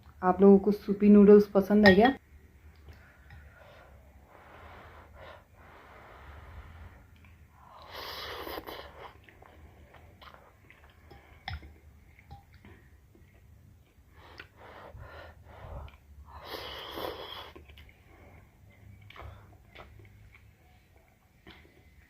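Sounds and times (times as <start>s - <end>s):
person blowing on hot food: 4.3s - 9.2s, 14.2s - 17.6s
soft chewing clicks: 7.1s - 7.4s, 8.8s - 14.6s, 17.4s - 22.0s
noodle slurps: 7.7s - 10.8s.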